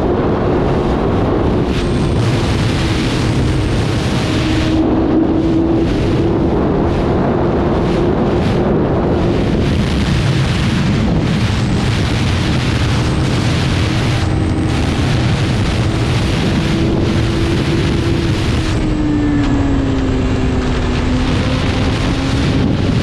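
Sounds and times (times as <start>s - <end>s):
motorcycle engine running: 0.0s - 23.0s
wind rushing over microphone: 0.0s - 23.0s.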